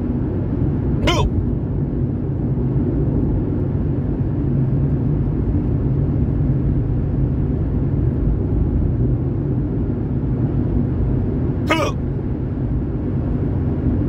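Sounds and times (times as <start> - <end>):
car road and engine rumble: 0.0 - 14.0.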